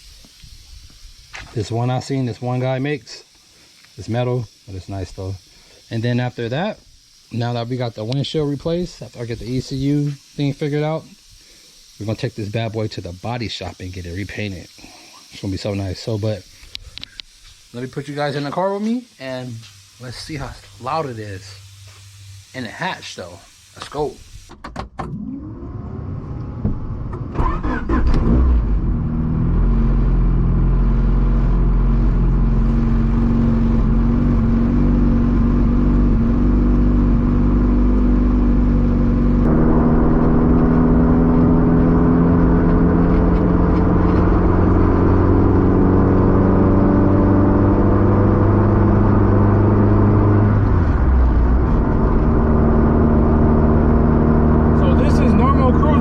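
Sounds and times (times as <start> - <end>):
car engine accelerating: 25.0 - 56.0.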